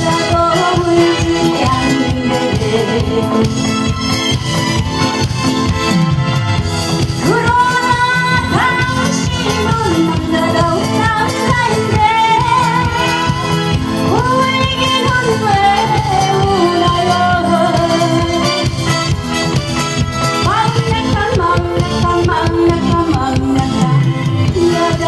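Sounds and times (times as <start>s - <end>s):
person singing: 0.0s - 3.7s, 20.5s - 25.0s
pop backing track with beat: 0.0s - 25.0s.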